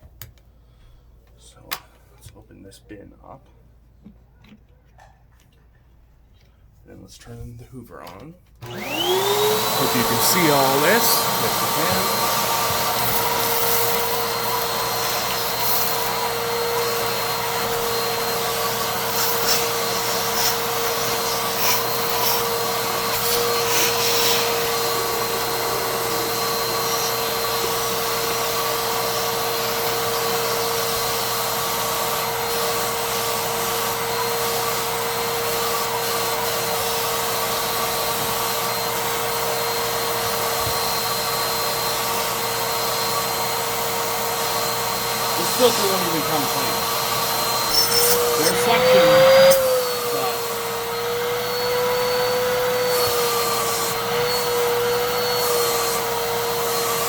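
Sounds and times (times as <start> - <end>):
vacuum cleaner motor whine: 8.6 - 57.0.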